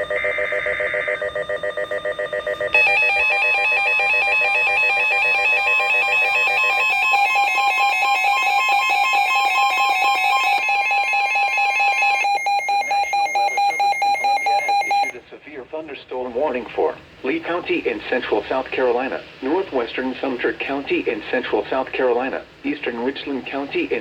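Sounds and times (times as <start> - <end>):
electronic alarm beeping tones: 0.0 - 15.2.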